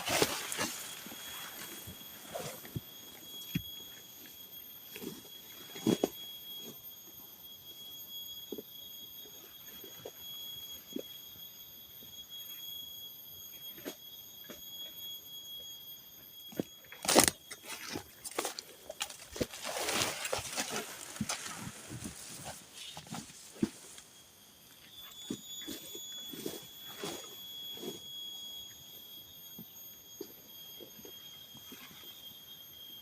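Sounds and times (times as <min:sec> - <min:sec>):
high-pitched insect drone: 0:00.0 - 0:33.0
branches snapping and knocking: 0:17.0 - 0:21.9
leaves and branches rustling: 0:17.0 - 0:24.0.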